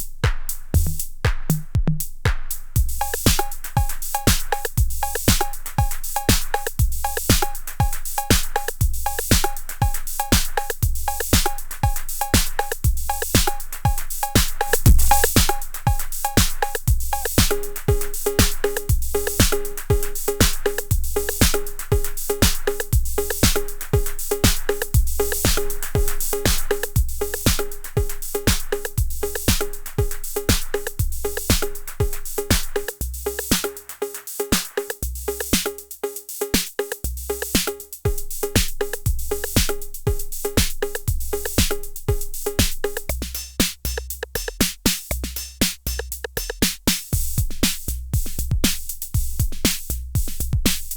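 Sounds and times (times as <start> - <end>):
drum machine kick: 0.0 - 33.8, 36.6 - 50.9
hi-hat-like ticks: 2.5 - 50.9
rapid drum rolls: 11.3 - 33.6
pitched drum tone: 14.8 - 15.7.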